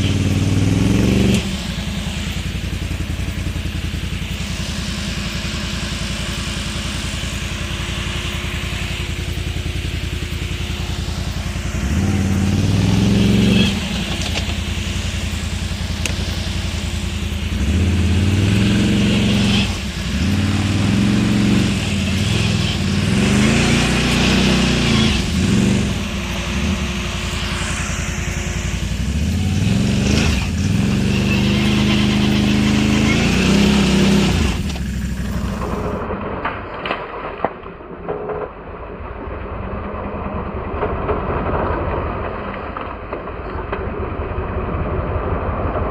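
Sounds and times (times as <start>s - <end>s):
atv engine revving: 0.0s - 36.5s.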